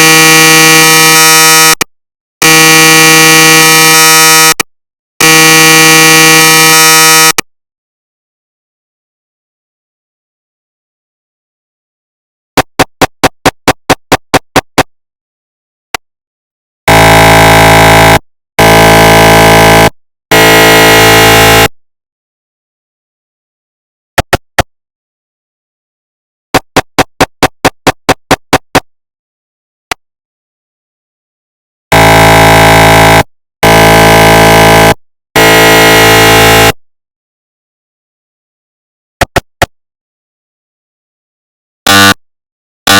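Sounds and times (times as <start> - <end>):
loud buzzing tones: 0.0 - 1.8, 2.4 - 4.6, 5.2 - 7.4, 16.9 - 21.8, 31.9 - 36.8, 41.9 - 42.2
click: 4.5 - 4.7.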